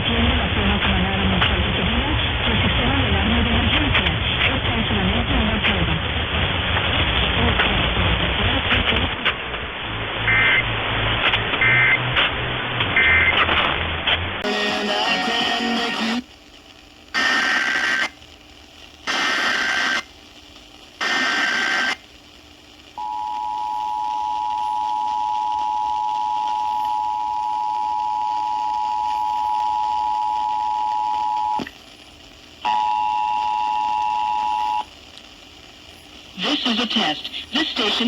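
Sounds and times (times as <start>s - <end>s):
radio background hiss: 0.0s - 13.8s, 14.4s - 25.7s, 30.8s - 32.7s, 33.3s - 38.0s.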